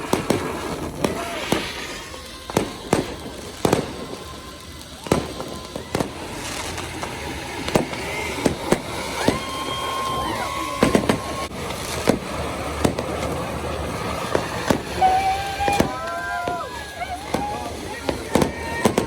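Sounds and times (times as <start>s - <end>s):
fireworks bangs: 0.0s - 19.0s
fireworks whistling: 0.0s - 19.0s.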